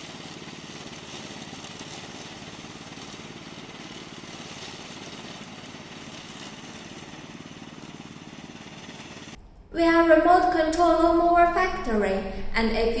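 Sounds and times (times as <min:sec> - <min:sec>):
lawn mower droning: 0:00.0 - 0:09.4.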